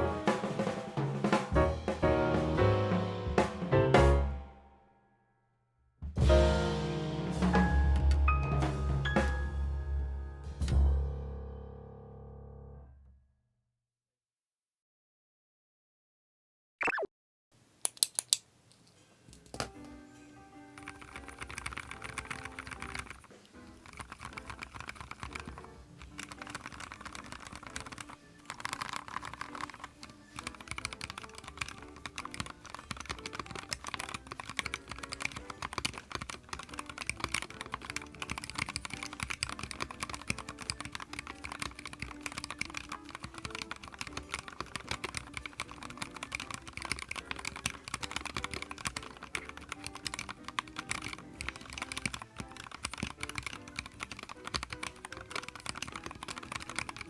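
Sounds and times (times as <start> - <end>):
mechanical keyboard typing: 20.6 - 57.0.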